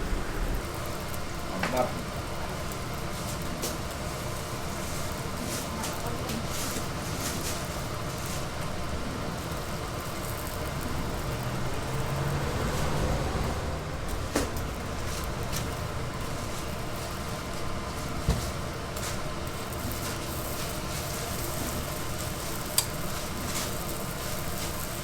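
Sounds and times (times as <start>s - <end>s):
low hum: 0.0s - 1.2s
dough deep-frying in hot oil: 0.1s - 25.0s.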